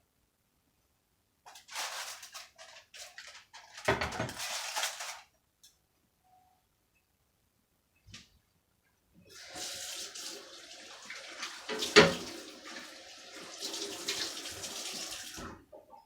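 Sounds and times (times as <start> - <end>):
kitchen tap running: 9.3 - 15.6.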